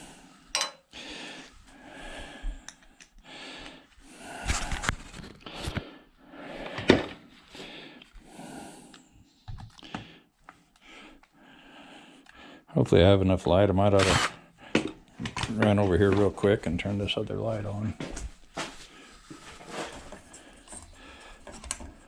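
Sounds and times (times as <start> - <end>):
metal and plastic scrapes and clicks: 20.1 - 22.0.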